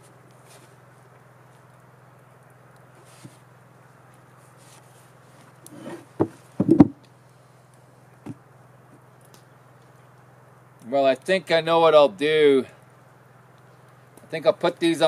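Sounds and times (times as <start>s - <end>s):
steady low hum: 0.0s - 15.0s
wood pieces knocking together: 6.2s - 7.0s.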